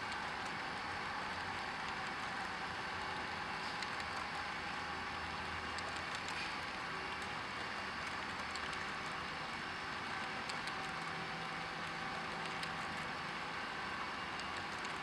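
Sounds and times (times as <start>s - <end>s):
faint clicks: 5.7s - 7.3s, 8.0s - 9.2s, 11.8s - 13.1s.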